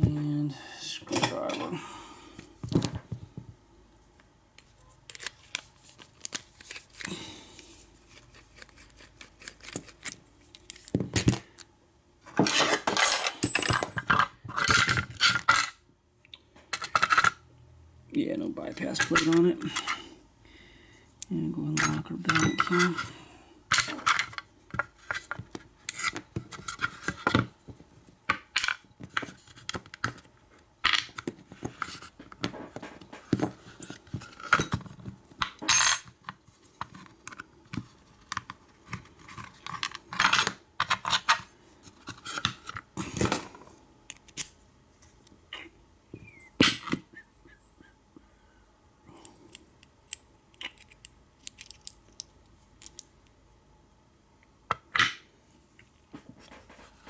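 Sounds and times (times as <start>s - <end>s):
padlock parts clicking and clinking: 49.3s - 53.1s.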